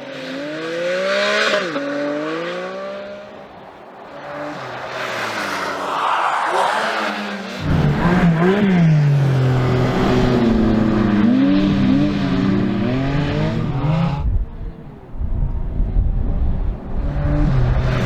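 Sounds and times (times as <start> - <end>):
car engine revving: 0.0 - 15.2
rushing noise: 3.5 - 10.0.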